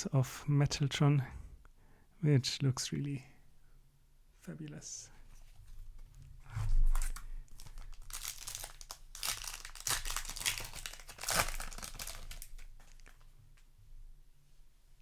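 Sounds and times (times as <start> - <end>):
wrapper crinkling and tearing: 6.9 - 13.3.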